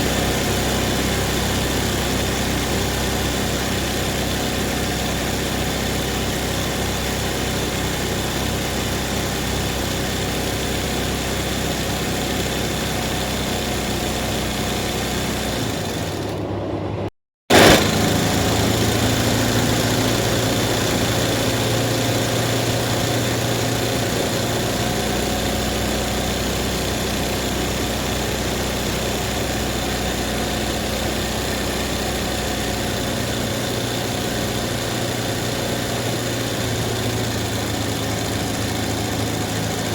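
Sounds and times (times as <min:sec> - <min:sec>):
embroidery machine humming: 0:00.0 - 0:39.9.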